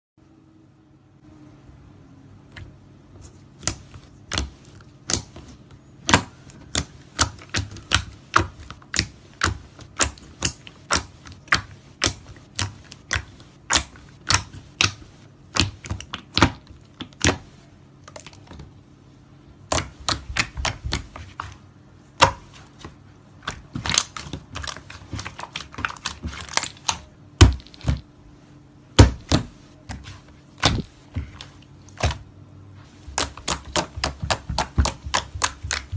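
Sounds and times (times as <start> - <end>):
slime clicking and popping: 33.2 - 35.9.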